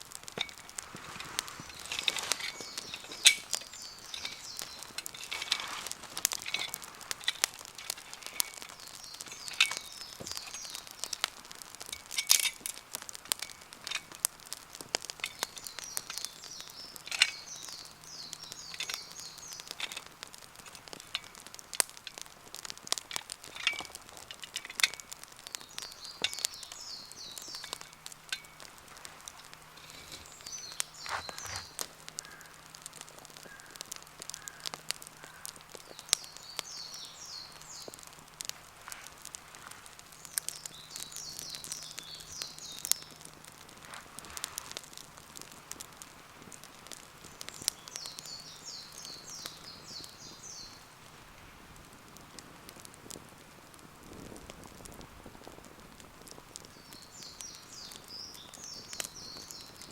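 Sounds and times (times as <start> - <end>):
campfire crackling and popping: 0.0 - 59.9.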